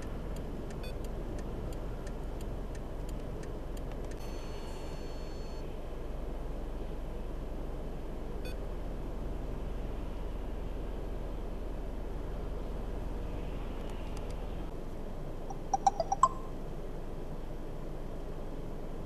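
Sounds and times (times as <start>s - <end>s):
vehicle noise: 0.0s - 19.0s
electronic beep: 4.2s - 5.6s, 15.5s - 16.5s.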